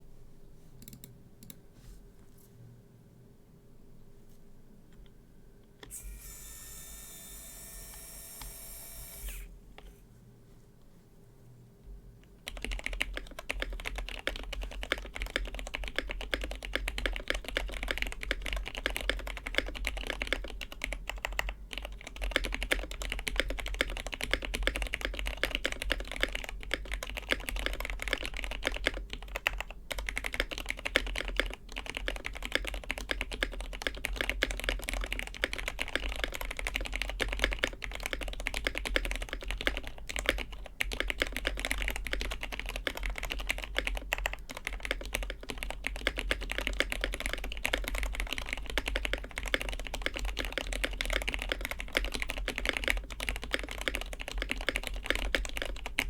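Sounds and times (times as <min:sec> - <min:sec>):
mechanical keyboard typing: 0:00.8 - 0:01.6, 0:12.4 - 0:56.0.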